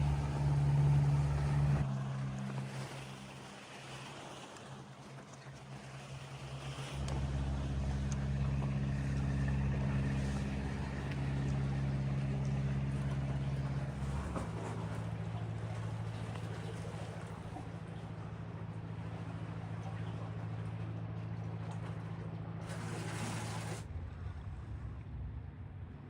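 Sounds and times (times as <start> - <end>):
low mechanical hum: 0.0 - 26.0.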